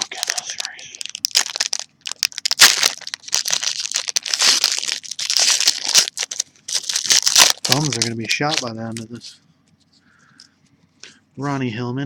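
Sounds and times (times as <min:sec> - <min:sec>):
plastic wrapper crinkling and tearing: 0:00.0 - 0:09.3.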